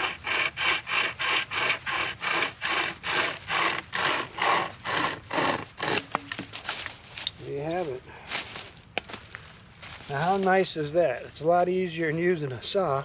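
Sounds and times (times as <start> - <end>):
hand chainsaw rasping through wood: 0.0 - 6.2.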